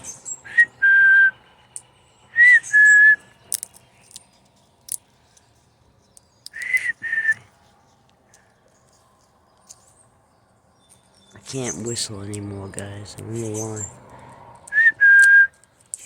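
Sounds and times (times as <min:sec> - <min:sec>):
person whistling bird call: 0:00.5 - 0:01.4, 0:02.4 - 0:03.2, 0:06.6 - 0:07.4, 0:14.7 - 0:15.6.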